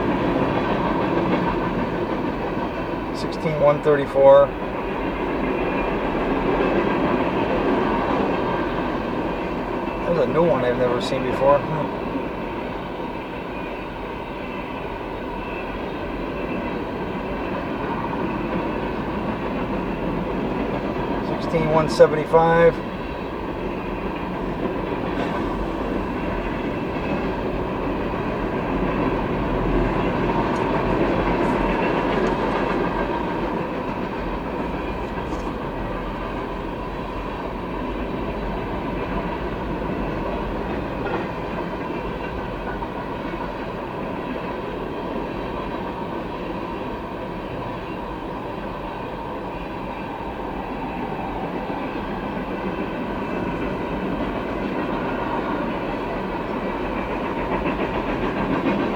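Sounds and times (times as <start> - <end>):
wheels clacking over rail joints: 52.7 - 58.9.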